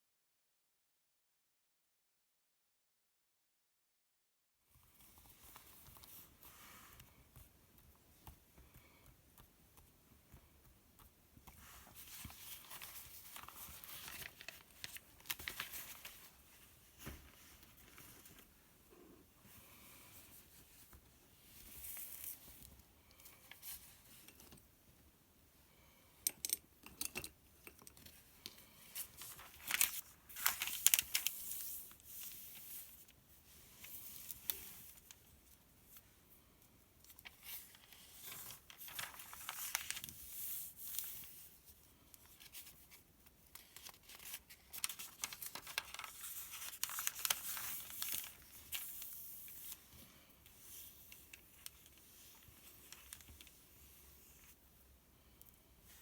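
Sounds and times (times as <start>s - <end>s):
paper pages rustling: 5.0s - 18.6s, 28.9s - 36.0s, 37.2s - 54.5s.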